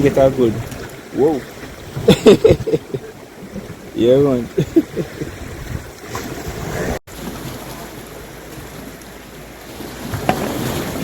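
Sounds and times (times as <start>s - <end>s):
wind buffeting microphone: 0.0s - 8.8s
waves washing on rocks: 0.0s - 11.0s.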